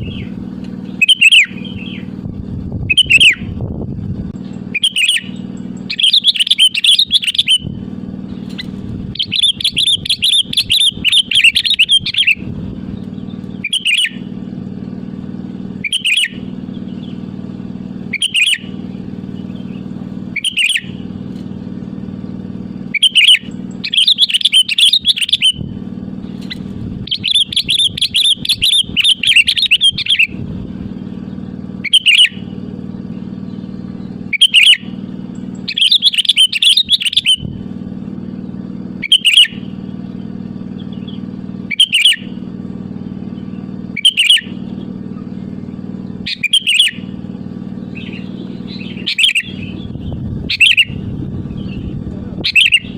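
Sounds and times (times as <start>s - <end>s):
bird chattering phrases: 0.0s - 2.2s, 2.8s - 3.5s, 4.6s - 14.4s, 15.8s - 17.4s, 18.0s - 21.1s, 22.9s - 25.8s, 26.4s - 32.5s, 34.1s - 37.6s, 39.0s - 39.8s, 40.6s - 42.5s, 43.2s - 45.3s, 46.2s - 52.9s
steady low hum: 0.0s - 52.9s
bird bubbling calls: 9.1s - 12.5s, 27.1s - 30.4s, 44.0s - 44.6s, 46.2s - 47.1s, 48.0s - 51.8s, 52.4s - 52.9s.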